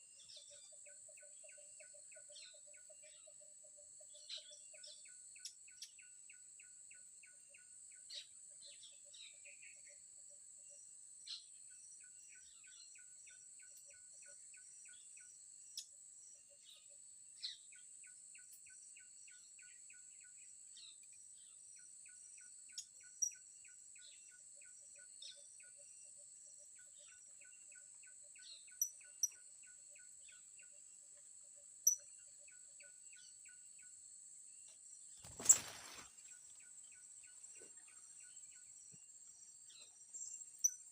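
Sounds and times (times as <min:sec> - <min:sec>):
sharp bird chirps: 0:35.2 - 0:38.7.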